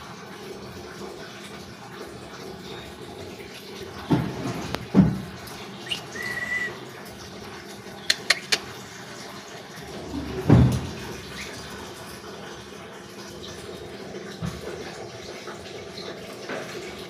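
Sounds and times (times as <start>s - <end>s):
bird short flat whistle: 5.9s - 6.8s.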